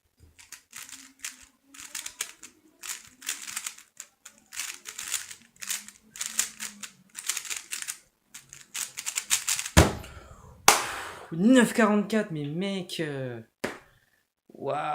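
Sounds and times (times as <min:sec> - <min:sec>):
plastic cube clicking: 0:00.4 - 0:09.8.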